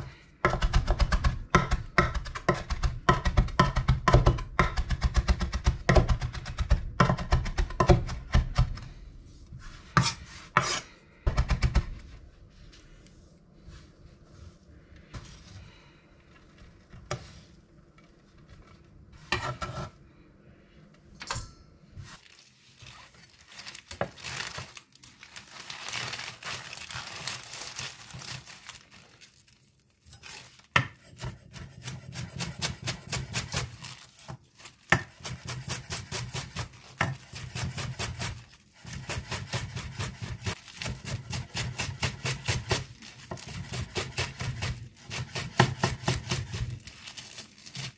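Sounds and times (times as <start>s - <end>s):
knife chopping on cutting board: 34.9s - 46.8s.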